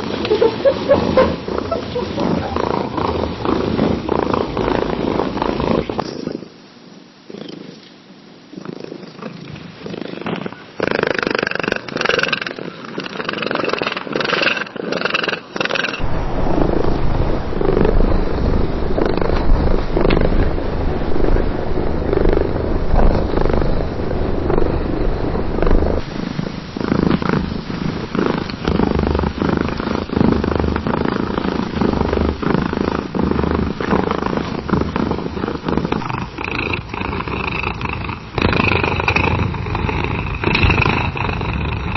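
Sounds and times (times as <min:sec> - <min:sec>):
cats purring: 0:00.0 - 0:16.2, 0:16.8 - 0:41.9.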